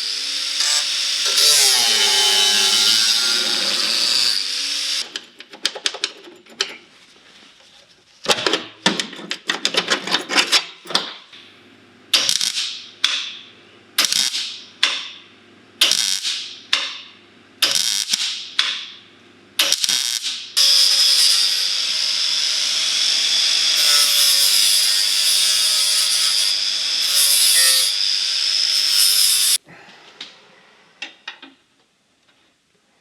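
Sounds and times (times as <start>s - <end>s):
power tool: 0.0s - 5.1s, 12.1s - 13.4s, 14.0s - 14.6s, 15.8s - 16.5s, 17.6s - 18.4s, 19.6s - 29.6s.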